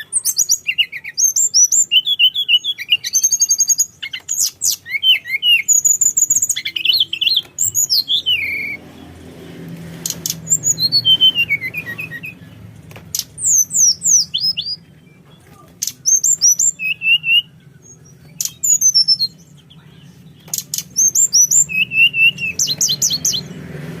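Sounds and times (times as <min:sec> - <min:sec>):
songbird whistling: 0:00.0 - 0:08.8, 0:10.0 - 0:23.6
sharp clicks: 0:20.4 - 0:21.0.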